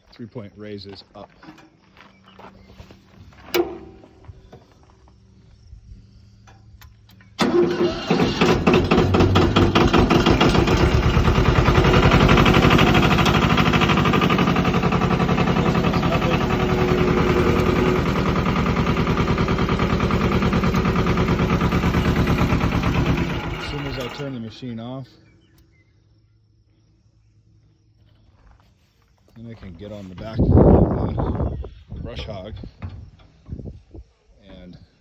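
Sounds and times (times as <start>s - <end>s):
diesel tractor engine starting: 7.1s - 24.9s.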